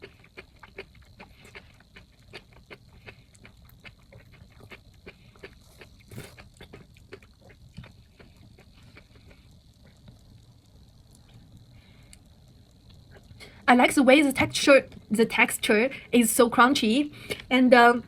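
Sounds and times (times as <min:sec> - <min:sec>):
chewing crunchy food: 0:00.0 - 0:13.6.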